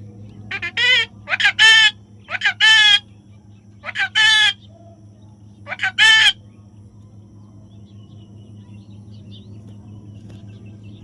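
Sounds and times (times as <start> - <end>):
steady low hum: 0.0 - 11.0
parrot calling: 0.5 - 3.1, 3.8 - 4.7, 5.6 - 6.4.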